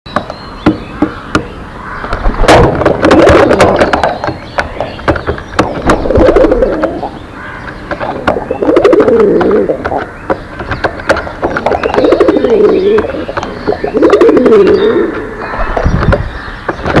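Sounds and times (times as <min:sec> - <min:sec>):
pigeons cooing: 0:01.0 - 0:17.0
sharp clicks and taps: 0:02.8 - 0:13.7
faint high bird chirp: 0:03.7 - 0:17.0.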